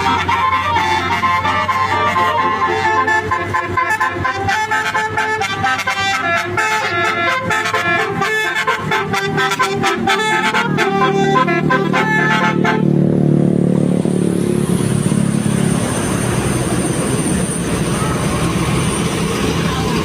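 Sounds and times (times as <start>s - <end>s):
multi-tone bus horn melody: 0.0s - 13.4s
loud low engine and road noise: 0.0s - 20.0s.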